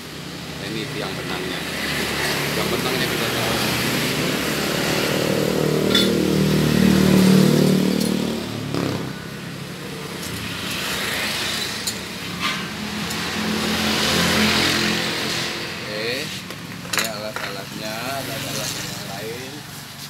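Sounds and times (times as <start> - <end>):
motorcycle engine passing by: 1.8 - 9.7, 12.9 - 16.3.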